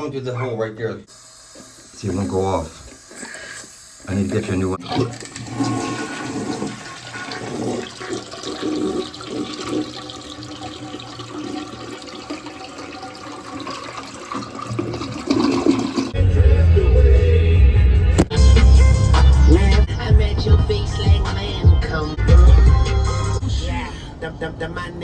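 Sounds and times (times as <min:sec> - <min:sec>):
toilet tank water running: 0:01.1 - 0:16.2
music with heavy bass beat: 0:16.2 - 0:23.4.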